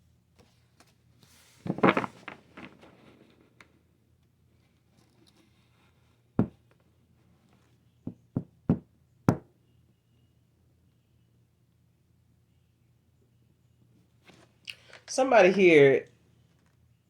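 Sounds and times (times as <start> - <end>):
sharp knocks on hard surface: 8.1 - 9.4.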